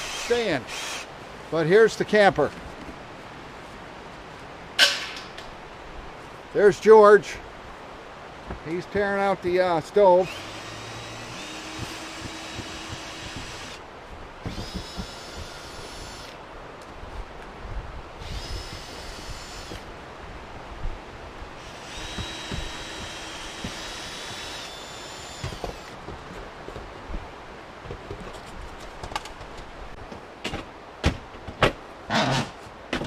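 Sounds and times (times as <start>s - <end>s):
power drill whine: 10.3s - 13.8s, 14.4s - 16.4s, 18.2s - 19.8s, 21.6s - 25.9s.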